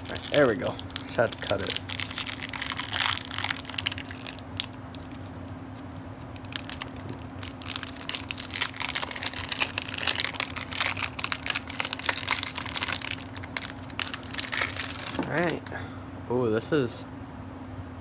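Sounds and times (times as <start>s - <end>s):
plastic wrap crinkling and tearing: 0.0s - 15.8s.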